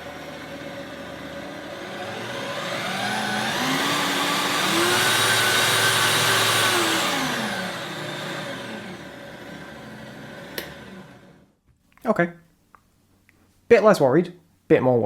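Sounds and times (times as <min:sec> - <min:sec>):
drill motor whining: 0:00.0 - 0:11.5.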